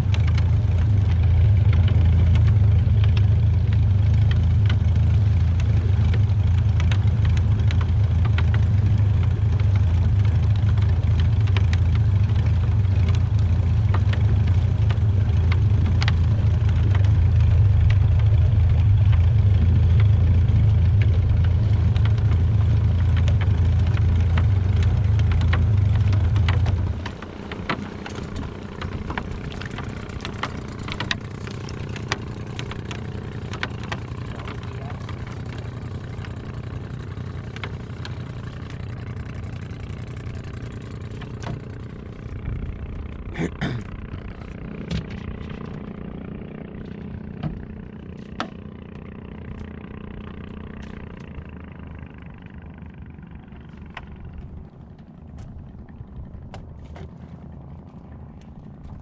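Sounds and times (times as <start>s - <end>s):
faint clicks: 0.0s - 43.3s
boat engine rumbling: 0.0s - 59.0s.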